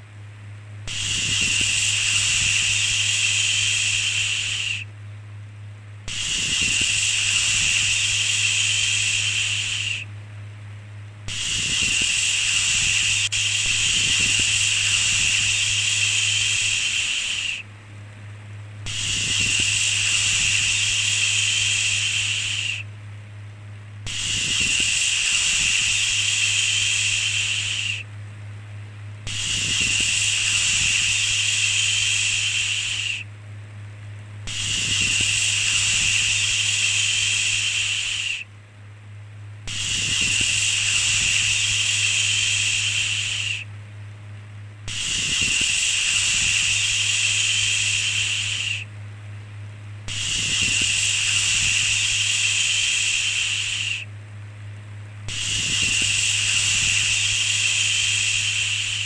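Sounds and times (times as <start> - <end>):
steady low hum: 0.0 - 59.0
person shushing: 6.1 - 10.0, 11.3 - 17.6, 18.9 - 22.8.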